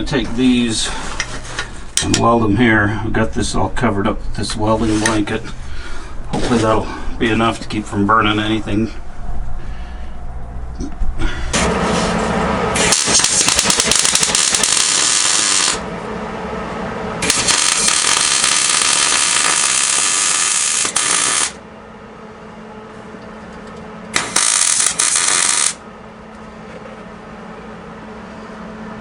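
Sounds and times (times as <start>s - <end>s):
steady hum: 0.0s - 29.0s
welding arc crackling: 12.8s - 15.9s, 17.2s - 21.6s, 24.1s - 25.8s.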